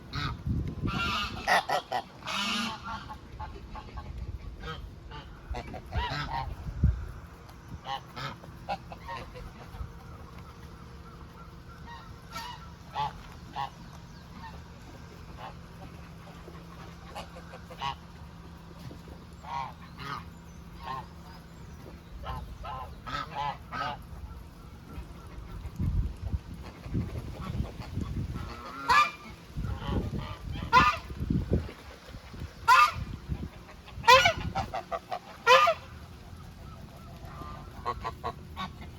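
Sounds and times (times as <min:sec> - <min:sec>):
geese honking: 0:00.0 - 0:06.8, 0:07.4 - 0:38.9.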